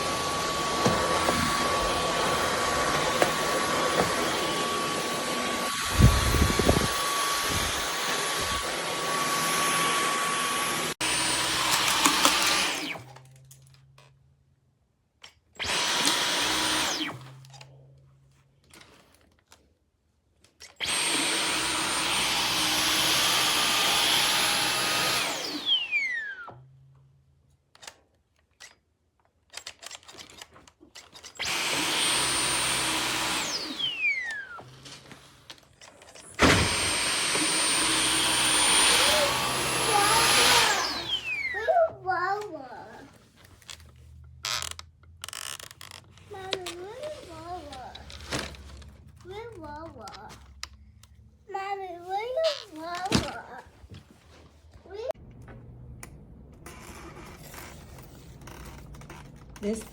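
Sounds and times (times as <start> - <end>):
cordless vacuum running: 0.0 - 13.1, 15.6 - 17.4, 20.8 - 26.5, 31.4 - 43.1.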